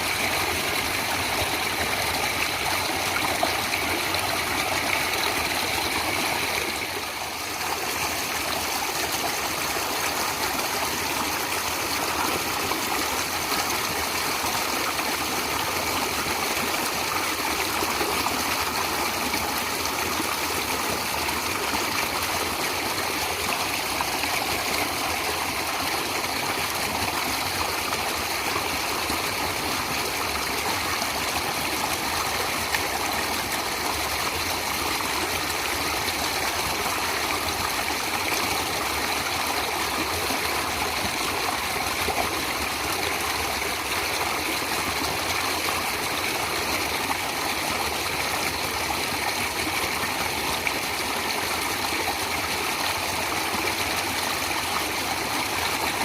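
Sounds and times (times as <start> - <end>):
stream flowing: 0.0 - 56.0.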